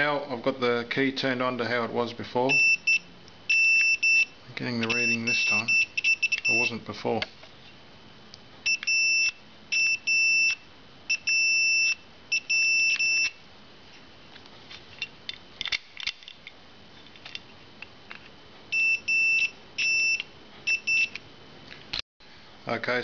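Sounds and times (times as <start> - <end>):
multimeter continuity beeps: 2.5 - 6.8, 8.6 - 13.4, 18.7 - 21.2.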